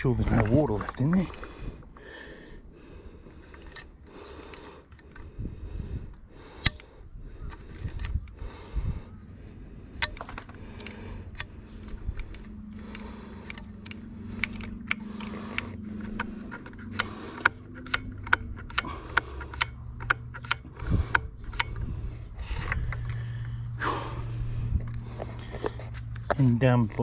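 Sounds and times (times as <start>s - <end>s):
low steady hum: 0.0s - 27.0s
sharp clicks: 6.5s - 8.4s, 10.0s - 23.8s.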